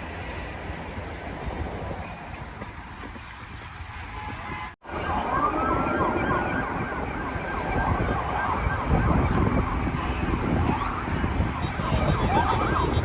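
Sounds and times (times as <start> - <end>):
engine and traffic rumble: 0.0 - 13.0
emergency vehicle siren: 4.8 - 13.0.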